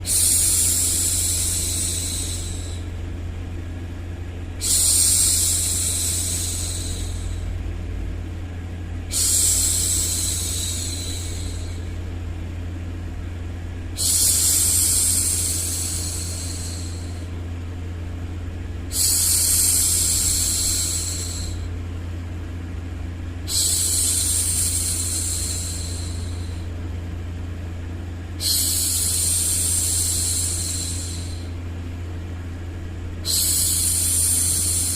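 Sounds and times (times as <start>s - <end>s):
low hum: 0.0s - 34.9s.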